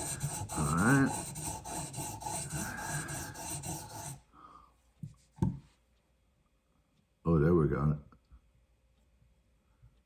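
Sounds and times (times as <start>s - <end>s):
sharpening stone rasping on blade: 0.0s - 4.2s.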